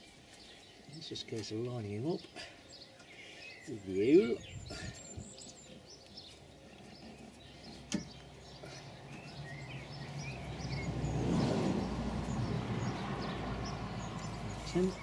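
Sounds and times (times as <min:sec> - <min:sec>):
birds chirping faintly: 0:00.0 - 0:15.0
vehicle passing by: 0:08.2 - 0:15.0.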